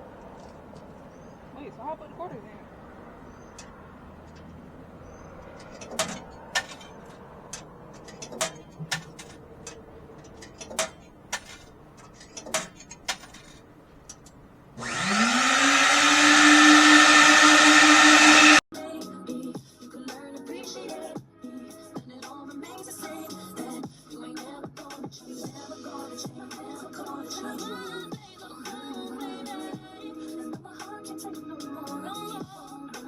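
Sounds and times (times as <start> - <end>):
sharp clicks and knocks: 5.3 - 18.6
vacuum motor whine: 14.6 - 18.6.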